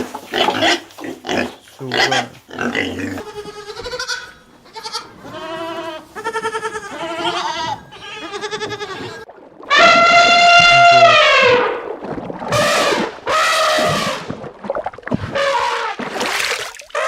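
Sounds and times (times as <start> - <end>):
animal bleating: 1.3 - 11.5.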